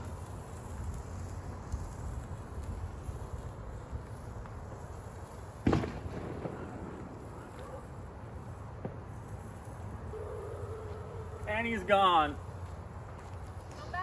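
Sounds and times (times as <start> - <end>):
low outdoor background noise: 0.0 - 14.0
firework bang: 5.6 - 7.9.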